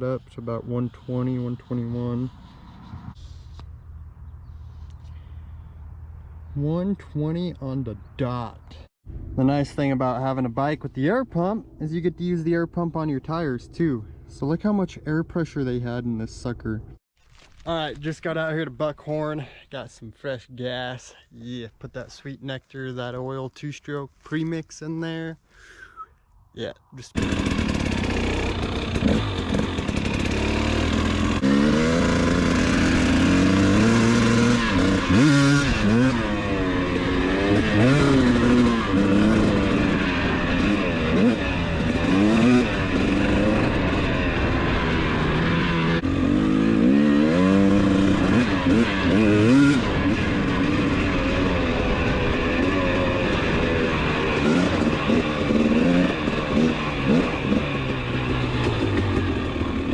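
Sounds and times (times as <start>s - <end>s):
dirt bike engine revving: 27.1s - 59.9s.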